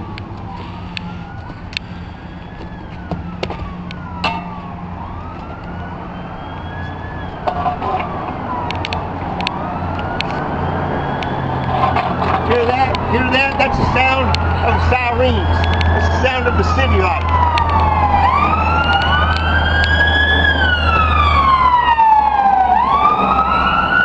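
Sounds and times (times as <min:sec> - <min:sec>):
emergency siren wailing: 0:00.0 - 0:24.0
low traffic hum: 0:00.0 - 0:24.0
sharp clicks: 0:08.6 - 0:10.4.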